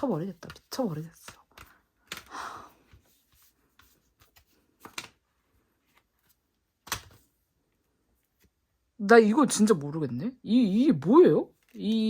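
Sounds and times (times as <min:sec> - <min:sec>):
paper and card rustling: 0:00.0 - 0:07.4, 0:11.5 - 0:12.0.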